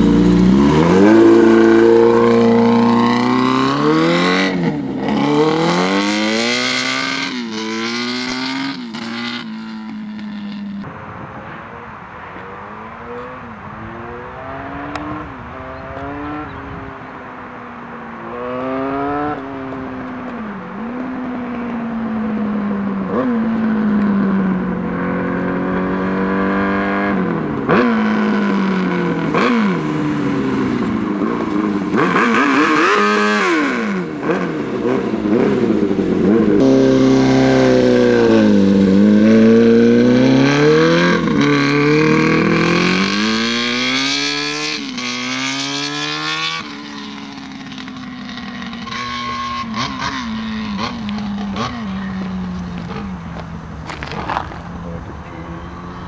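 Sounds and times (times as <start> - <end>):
minibike engine revving: 0.0 - 10.9, 18.2 - 56.0.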